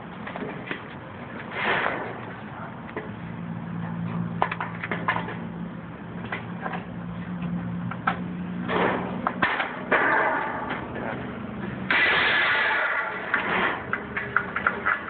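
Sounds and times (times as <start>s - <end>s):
crunching scraping metal cuts: 1.5s - 2.3s, 8.6s - 10.9s, 11.8s - 15.0s.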